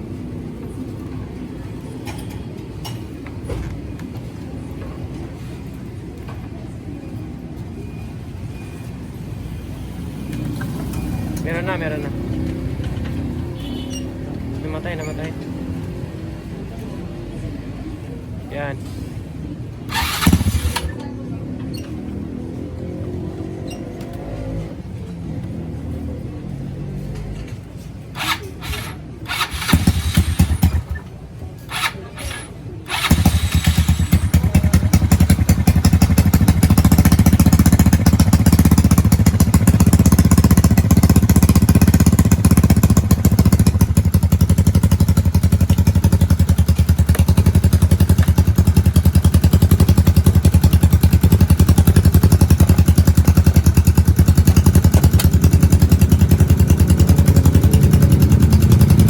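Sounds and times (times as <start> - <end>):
scooter engine starting and idling: 10.1 - 13.4, 19.8 - 24.5, 28.2 - 59.0.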